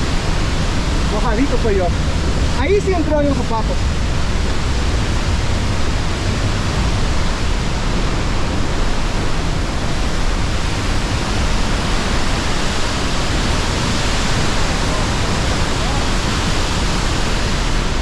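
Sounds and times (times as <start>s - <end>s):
waterfall roaring: 0.0s - 18.0s.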